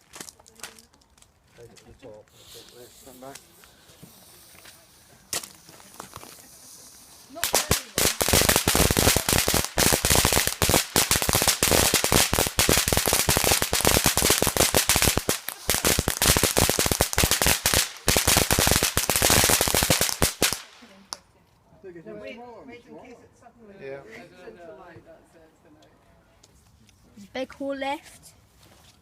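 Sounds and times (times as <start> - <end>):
firework bangs and crackles: 2.6 - 20.9.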